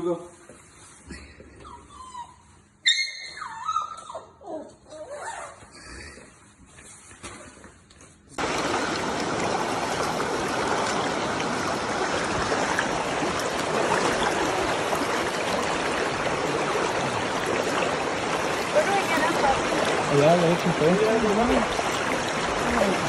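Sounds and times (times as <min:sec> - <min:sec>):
running water rushing: 0:08.4 - 0:23.0.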